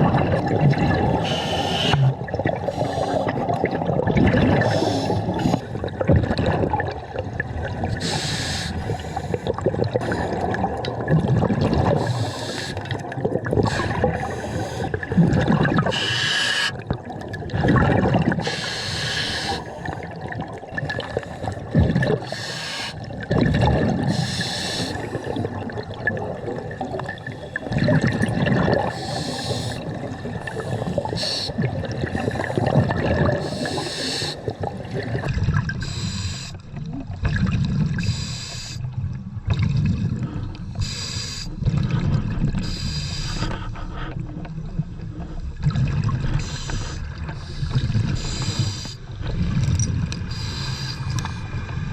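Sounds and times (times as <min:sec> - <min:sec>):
bubbling underwater exhales: 0:00.0 - 0:51.9
regulator hissing inhale: 0:01.2 - 0:02.1, 0:02.7 - 0:03.4, 0:04.7 - 0:05.7, 0:08.0 - 0:10.4, 0:12.0 - 0:12.8, 0:13.7 - 0:15.0, 0:15.9 - 0:16.8, 0:18.4 - 0:20.0, 0:22.2 - 0:23.1, 0:24.1 - 0:25.5, 0:28.9 - 0:32.7, 0:33.4 - 0:34.6, 0:35.8 - 0:36.6, 0:38.0 - 0:38.9, 0:40.8 - 0:41.6, 0:42.6 - 0:44.3, 0:46.4 - 0:49.2, 0:50.3 - 0:51.6.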